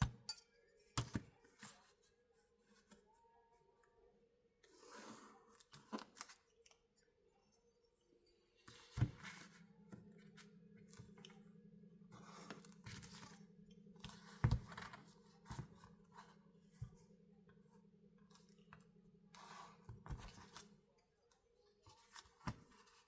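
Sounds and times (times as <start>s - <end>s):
faint steady hum: 6.7s - 23.0s.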